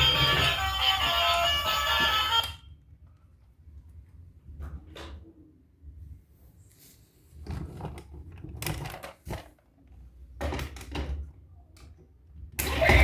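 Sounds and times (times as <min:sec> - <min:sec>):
music: 0:00.0 - 0:02.6.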